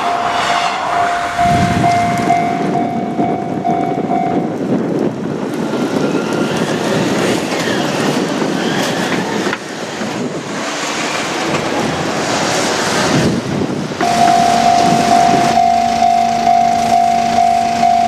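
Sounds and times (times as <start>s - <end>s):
train wheels clattering over rail joints: 4.5s - 15.7s.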